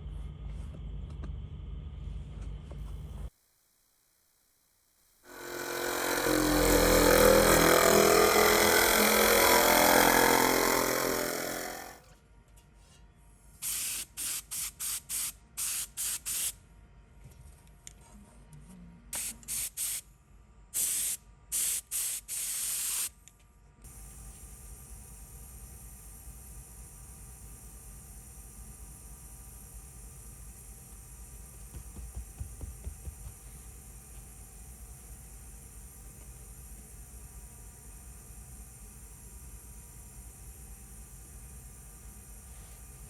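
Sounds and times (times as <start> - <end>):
loud steady noise: 5.3 - 12.0
spray adhesive gun hissing: 13.6 - 16.5, 20.8 - 23.1, 29.8 - 39.7.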